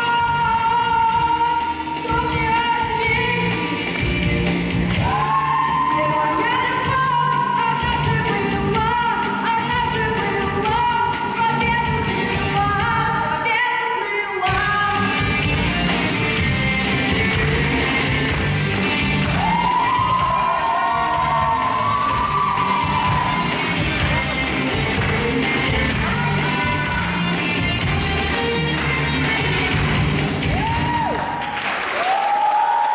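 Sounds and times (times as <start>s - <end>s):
woman singing: 0.0s - 15.5s, 22.2s - 30.0s
rock band playing: 21.1s - 30.7s.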